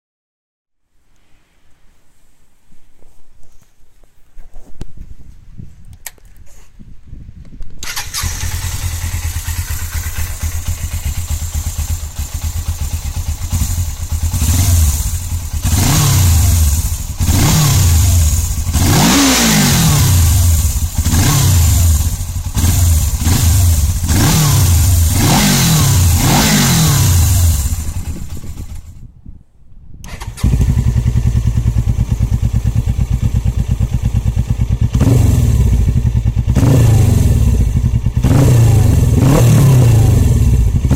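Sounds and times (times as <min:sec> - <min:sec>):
motorcycle engine idling and revving: 0:07.8 - 0:29.1, 0:30.1 - 0:40.9.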